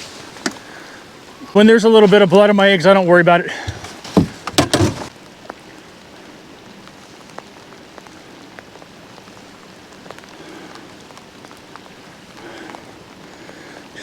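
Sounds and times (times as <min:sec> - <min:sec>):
heavy rain falling: 0:00.0 - 0:14.0.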